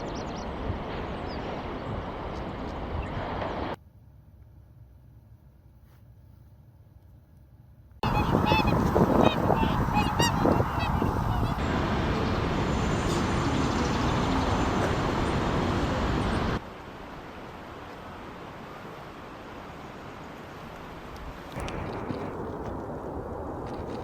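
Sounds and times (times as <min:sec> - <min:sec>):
bird calls: 0:08.0 - 0:12.4
steady rushing noise: 0:08.0 - 0:24.0.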